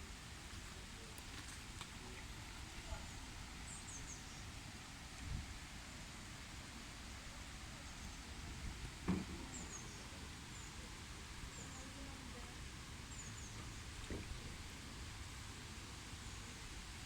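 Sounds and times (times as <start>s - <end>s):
rain hissing: 0.0s - 17.0s
faint bird chirps: 3.6s - 4.5s, 9.3s - 14.0s
thump: 9.0s - 9.5s, 14.0s - 14.5s.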